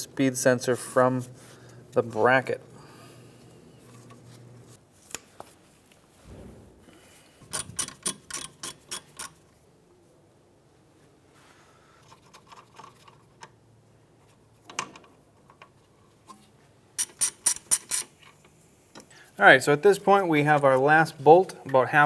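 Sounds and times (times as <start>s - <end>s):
hand ratchet clicking: 7.5s - 9.4s.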